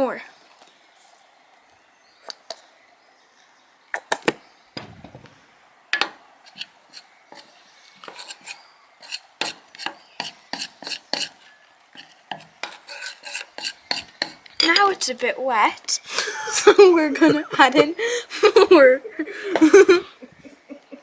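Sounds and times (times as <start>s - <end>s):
spoon scraping and knocking bowl: 6.0s - 15.0s.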